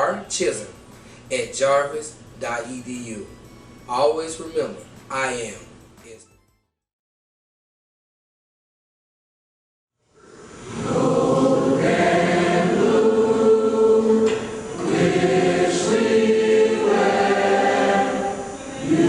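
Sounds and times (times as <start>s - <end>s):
group singing held chords: 10.2s - 19.0s.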